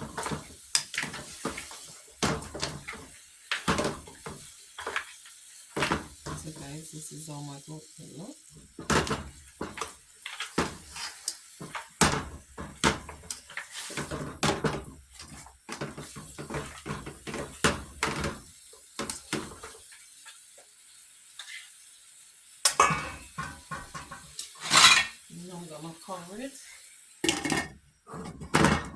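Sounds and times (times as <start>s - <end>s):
metal utensil clinking on pot: 22.7s - 25.2s.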